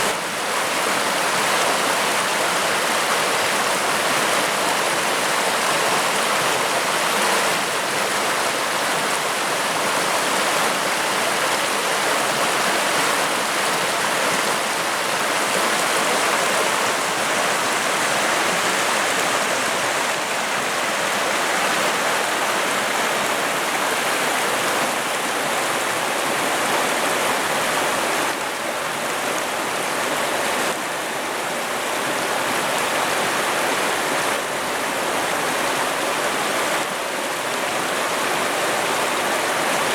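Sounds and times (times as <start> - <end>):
river rushing and bubbling: 0.0 - 39.9.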